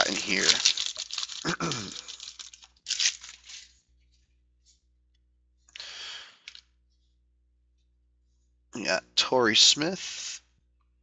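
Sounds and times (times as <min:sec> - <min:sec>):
card pack wrapper tearing: 0:00.0 - 0:03.7.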